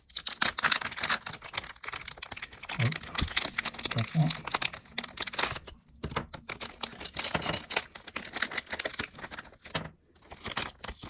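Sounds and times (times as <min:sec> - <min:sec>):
plastic packet crinkling: 0:00.0 - 0:11.0
plastic toy pieces clicking: 0:00.0 - 0:11.0.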